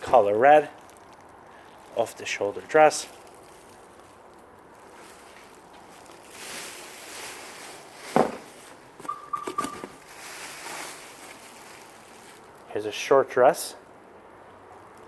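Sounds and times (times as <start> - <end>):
plastic bags rustling: 0.0 - 12.8.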